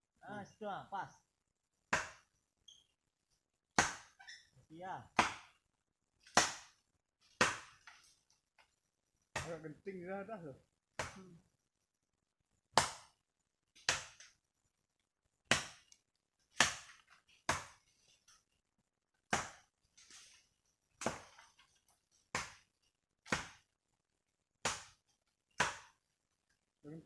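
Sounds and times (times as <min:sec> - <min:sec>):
machete chopping hard wood: 0:01.9 - 0:02.2, 0:03.7 - 0:04.2, 0:05.1 - 0:05.5, 0:06.3 - 0:06.8, 0:07.4 - 0:07.8, 0:12.8 - 0:13.1, 0:13.8 - 0:14.2, 0:15.5 - 0:15.9, 0:16.6 - 0:17.8, 0:19.3 - 0:19.7, 0:21.0 - 0:21.3, 0:22.3 - 0:22.6, 0:23.3 - 0:23.6, 0:24.6 - 0:25.0, 0:25.6 - 0:26.0.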